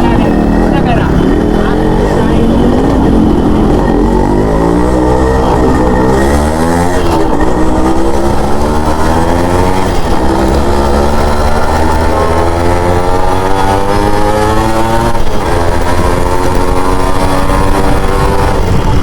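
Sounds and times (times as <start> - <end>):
motorcycle engine accelerating: 0.0 - 19.0.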